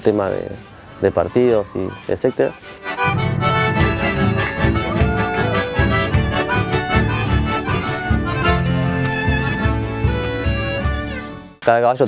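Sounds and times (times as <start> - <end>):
background music with beat: 1.9 - 11.6.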